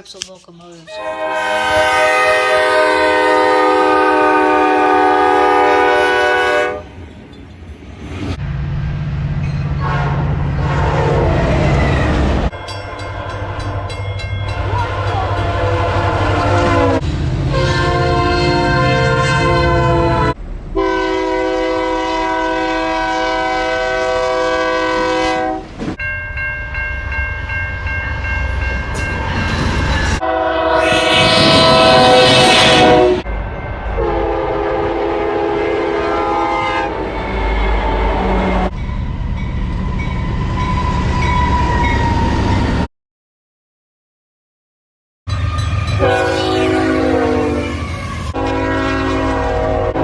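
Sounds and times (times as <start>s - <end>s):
low rumble of trains: 0.0s - 42.9s, 45.3s - 50.0s
locomotive horn blasts: 0.9s - 7.0s, 9.8s - 11.4s, 14.6s - 25.7s, 30.1s - 33.3s, 34.0s - 38.7s, 45.8s - 50.0s.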